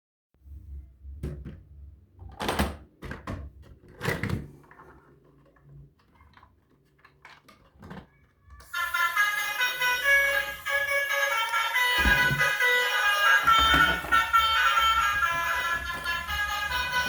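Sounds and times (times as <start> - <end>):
objects knocking and clattering: 11.9 - 12.7, 13.3 - 17.0.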